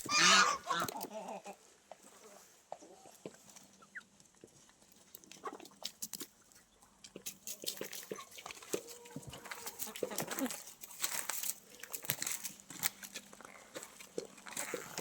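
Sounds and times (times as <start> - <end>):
chicken calls: 0.0 - 1.6
chickens pecking feed: 0.0 - 15.0.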